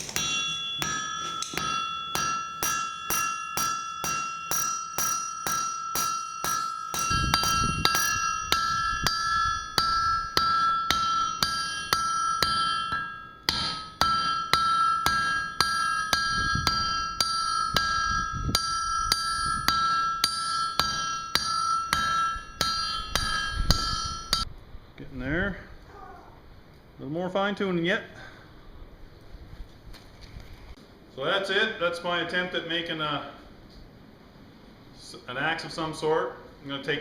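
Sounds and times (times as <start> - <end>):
hammer striking steel on anvil: 0.0 - 24.5.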